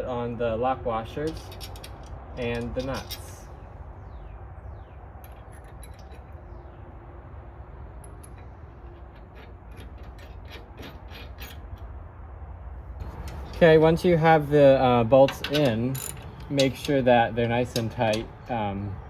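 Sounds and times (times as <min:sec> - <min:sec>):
metallic clicks of nuts and washers: 0:01.2 - 0:03.5, 0:05.2 - 0:06.4, 0:08.0 - 0:11.9, 0:13.0 - 0:18.7.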